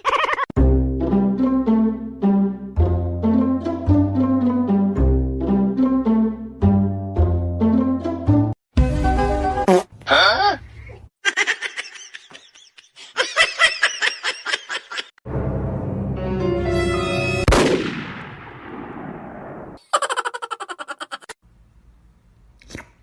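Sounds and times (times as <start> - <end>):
music: 0.6 - 9.7, 15.3 - 17.5.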